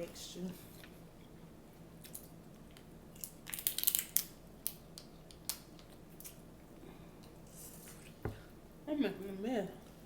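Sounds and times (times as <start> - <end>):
crab shells cracking: 2.1 - 6.4.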